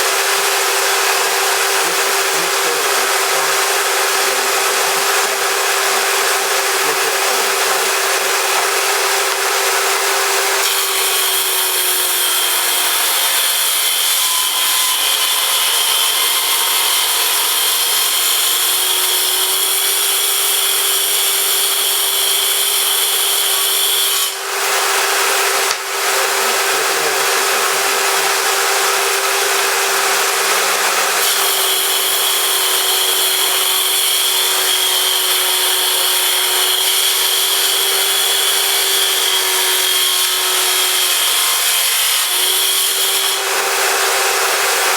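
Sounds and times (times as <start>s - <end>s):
saw blade cutting wood: 0.0s - 44.9s
table saw motor whine: 0.0s - 44.9s.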